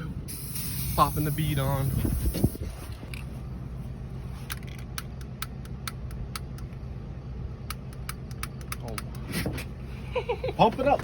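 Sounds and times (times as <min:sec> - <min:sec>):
air compressor running: 0:00.0 - 0:03.1
sharp clicks: 0:04.5 - 0:06.8, 0:07.6 - 0:09.2.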